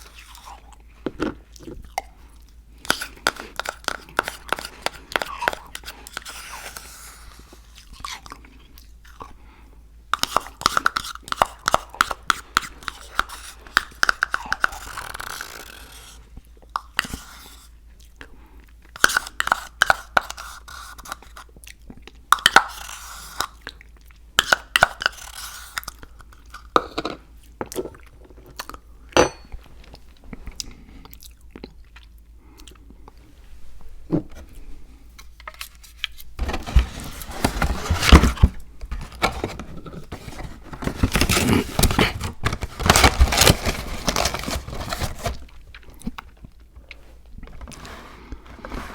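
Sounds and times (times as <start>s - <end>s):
chewing crunchy food: 0.0s - 9.4s, 21.1s - 29.1s, 29.8s - 33.3s.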